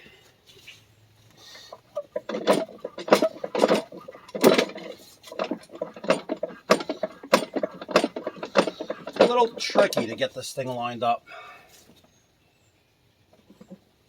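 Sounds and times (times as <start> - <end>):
metal clanking and clicking: 2.0 - 10.3.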